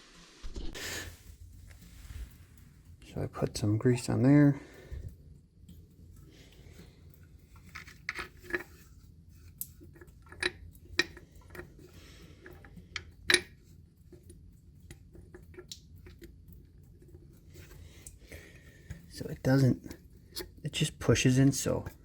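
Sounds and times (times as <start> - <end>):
valve parts clicking and knocking: 10.0 - 11.7, 12.4 - 13.5.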